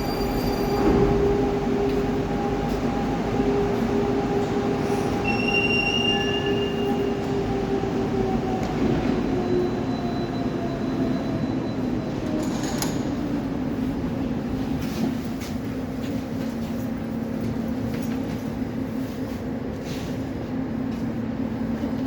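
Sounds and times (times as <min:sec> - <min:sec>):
traction drive whine: 0:00.0 - 0:14.6
metro train running noise: 0:00.0 - 0:22.0
high wheel squeals: 0:04.9 - 0:07.3.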